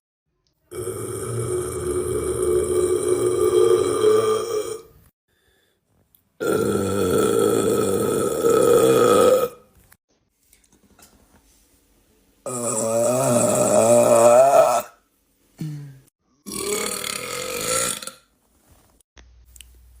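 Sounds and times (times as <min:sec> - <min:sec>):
man belching: 0:00.7 - 0:04.9, 0:06.4 - 0:09.6, 0:12.5 - 0:15.0, 0:16.5 - 0:18.2.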